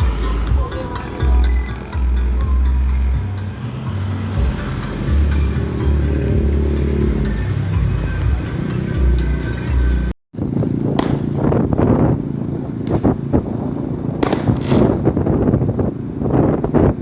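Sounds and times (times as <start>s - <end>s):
motorcycle and car traffic: 0.0s - 17.0s
sharp cracks: 10.8s - 11.9s, 12.8s - 15.3s.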